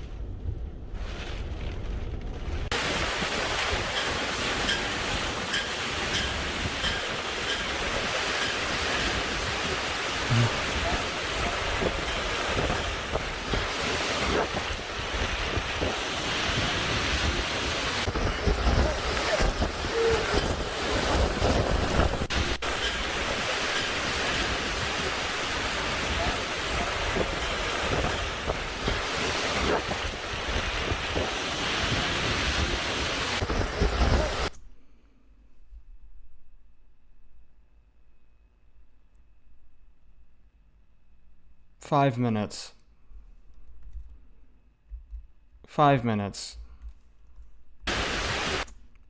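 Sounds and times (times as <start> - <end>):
strong wind gusts buffeting microphone: 2.0 - 34.5.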